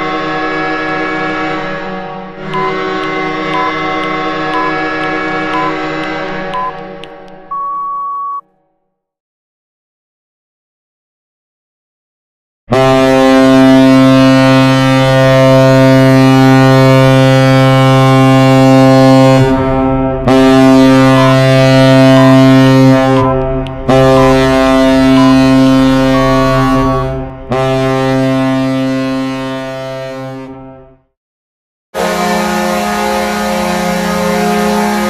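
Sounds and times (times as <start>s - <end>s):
deep air horn blasts: 0.0s - 7.2s, 12.7s - 31.0s, 32.0s - 35.0s.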